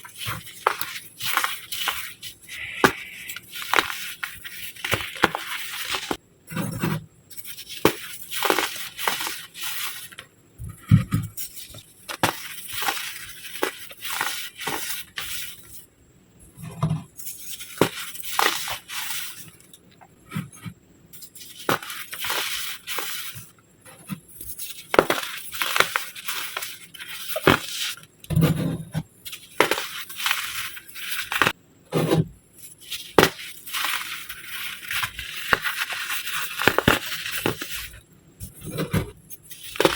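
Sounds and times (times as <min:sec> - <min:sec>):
baking soda shapes crunching: 0:00.0 - 0:06.2.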